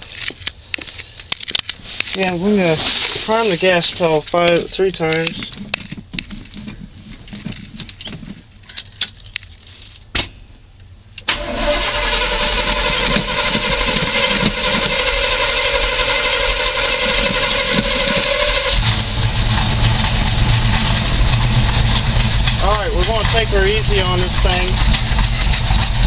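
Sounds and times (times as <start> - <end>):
steady whine: 10.5 - 26.0
truck engine starting and running: 11.1 - 26.0.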